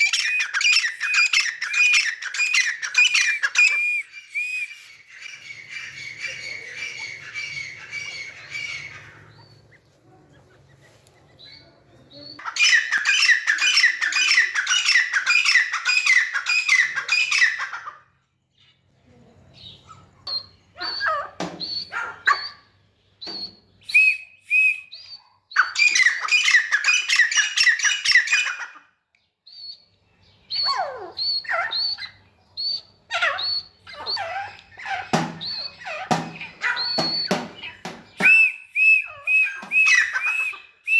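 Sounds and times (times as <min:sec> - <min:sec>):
short whistled bird notes: 0:00.0 - 0:05.1, 0:23.4 - 0:25.2, 0:36.8 - 0:40.9
bird ringing call: 0:33.2 - 0:38.5.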